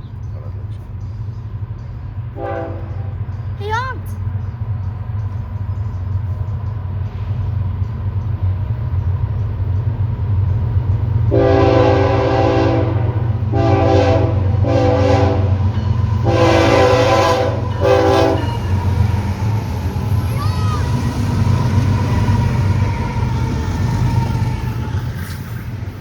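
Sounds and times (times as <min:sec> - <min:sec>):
passing train rumble: 0:00.0 - 0:26.0
locomotive air horn blasts: 0:02.4 - 0:03.2, 0:11.3 - 0:18.7.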